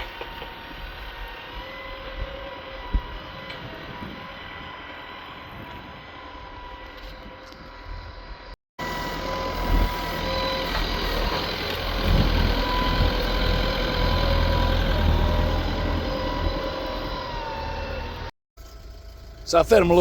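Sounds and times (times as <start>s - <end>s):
tractor engine running: 8.8s - 20.0s.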